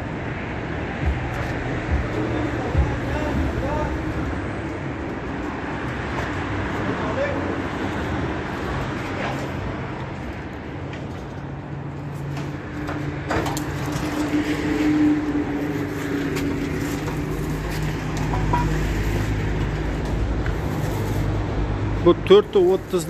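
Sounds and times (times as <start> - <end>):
knocks and clatter: 12.3 - 14.5, 16.3 - 20.2.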